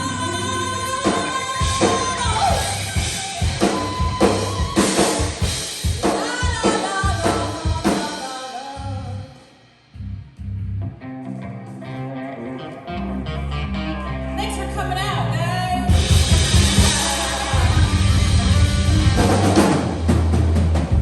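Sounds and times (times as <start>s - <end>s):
heavy metal band playing live: 0.0s - 8.4s, 15.9s - 21.0s
hard drum hits: 15.9s - 21.0s.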